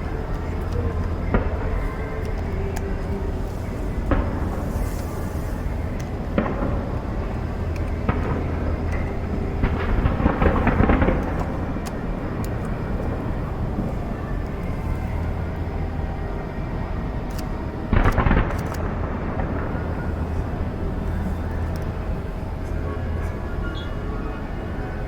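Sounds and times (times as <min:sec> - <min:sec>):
continuous low rumble: 0:00.0 - 0:25.0
fireworks bangs: 0:00.4 - 0:15.1.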